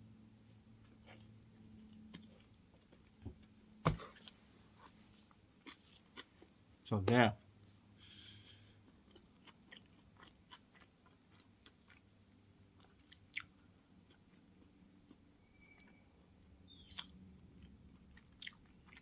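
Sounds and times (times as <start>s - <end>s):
person chewing food: 5.6s - 6.6s, 8.1s - 12.2s, 12.8s - 14.3s, 16.9s - 19.0s.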